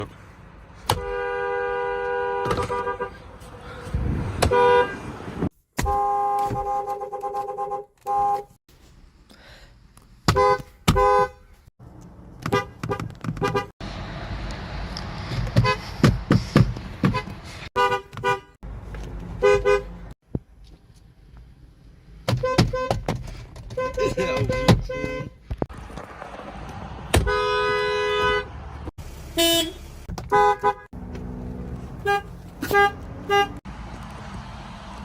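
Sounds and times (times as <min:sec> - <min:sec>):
car horns honking: 0:00.8 - 0:03.4, 0:04.3 - 0:08.6, 0:10.3 - 0:11.6, 0:12.4 - 0:13.7, 0:15.5 - 0:16.1, 0:17.0 - 0:18.6, 0:19.3 - 0:20.2, 0:22.3 - 0:25.5, 0:27.1 - 0:31.0, 0:32.0 - 0:33.6.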